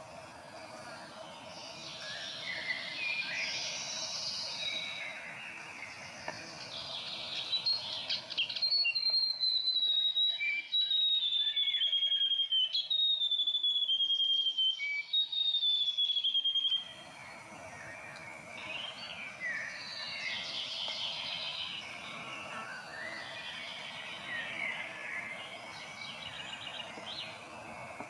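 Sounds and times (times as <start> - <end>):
faint bird calls: 16.5 - 28.0.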